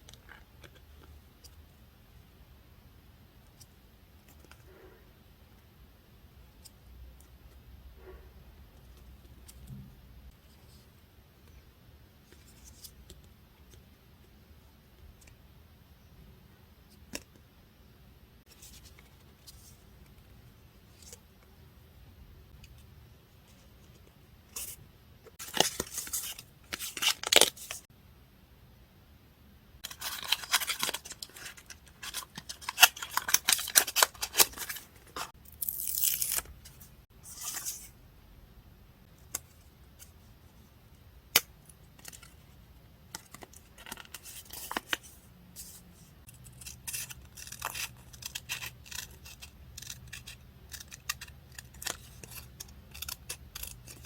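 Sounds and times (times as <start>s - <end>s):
scissors cutting paper: 46.4s - 54.0s.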